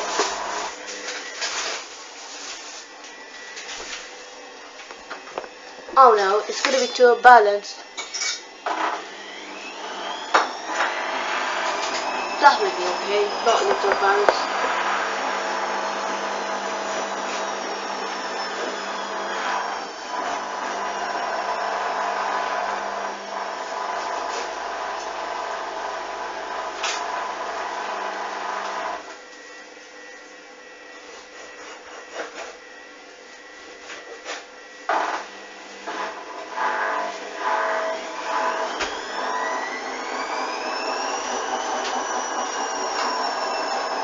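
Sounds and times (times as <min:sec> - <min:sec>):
washing machine motor whine: 0:00.0 - 0:44.0.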